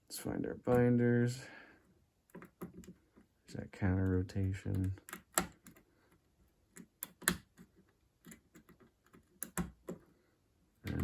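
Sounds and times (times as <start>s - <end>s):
lock pick clicking in a lock: 4.7s - 5.8s, 6.7s - 10.0s.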